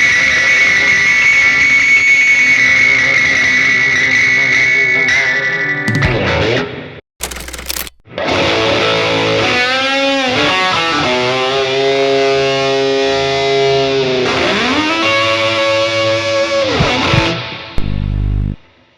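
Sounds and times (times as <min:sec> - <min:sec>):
distorted electric guitar bends: 0:16.4 - 0:18.6.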